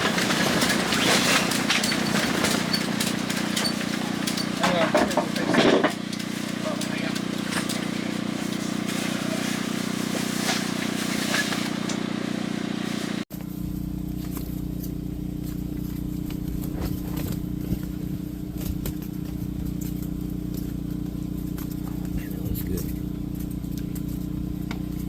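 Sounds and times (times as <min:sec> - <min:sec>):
steady low hum: 0:02.2 - 0:25.0.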